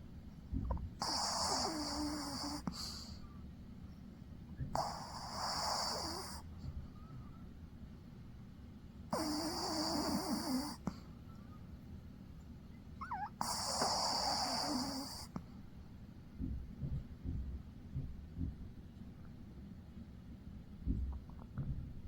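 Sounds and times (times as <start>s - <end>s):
dog snoring: 0.6s - 3.2s, 4.6s - 6.5s, 9.1s - 11.0s, 13.0s - 15.5s.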